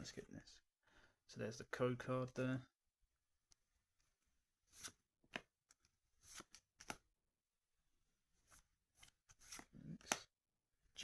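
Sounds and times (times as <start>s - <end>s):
cards sliding over one another: 4.7s - 5.5s, 6.2s - 7.0s, 8.4s - 10.3s.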